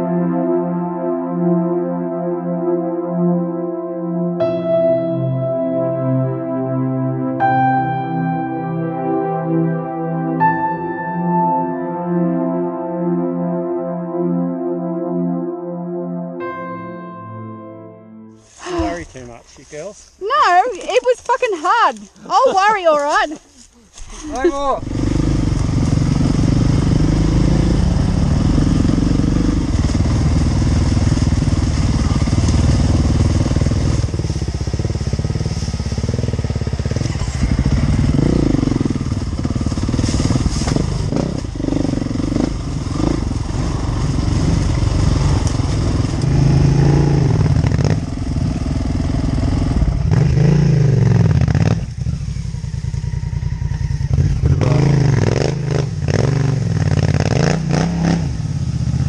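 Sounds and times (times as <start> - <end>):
off-road motorcycle engine revving: 24.0 - 59.0.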